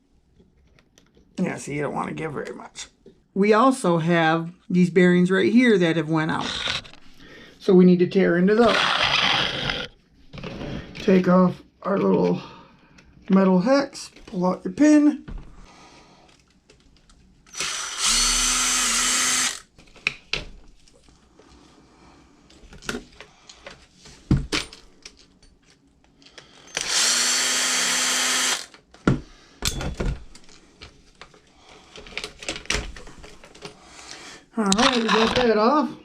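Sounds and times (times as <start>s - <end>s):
cordless drill running: 8.7s - 9.9s, 17.5s - 19.7s, 26.6s - 28.8s.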